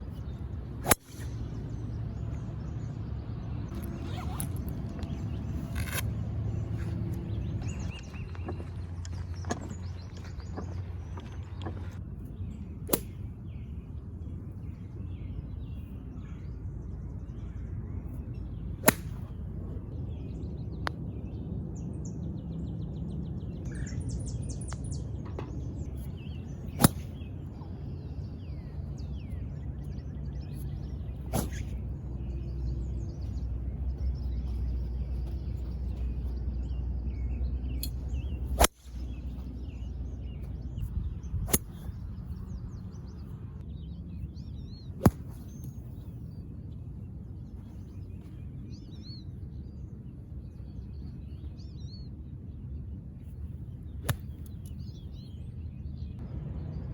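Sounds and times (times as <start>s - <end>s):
steady low rumble: 0.0s - 56.9s
golf club striking balls: 0.8s - 1.8s, 12.9s - 13.7s, 18.8s - 19.4s, 25.3s - 27.4s, 30.0s - 36.0s, 36.6s - 42.1s, 44.4s - 46.0s, 54.0s - 55.1s.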